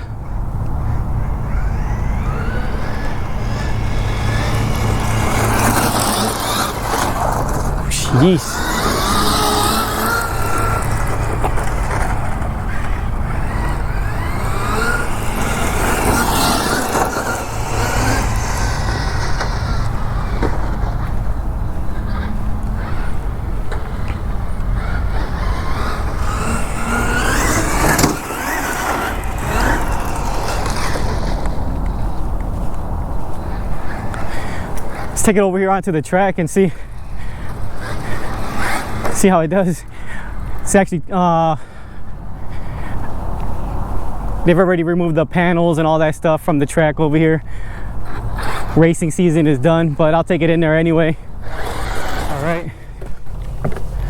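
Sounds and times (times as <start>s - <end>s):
electric motor whining: 0.0s - 35.2s, 36.8s - 39.3s, 51.3s - 54.0s
tires rumbling on ground: 0.0s - 40.8s, 41.4s - 54.0s
tyre and drivetrain noise: 0.0s - 40.8s, 41.5s - 44.8s, 47.4s - 54.0s.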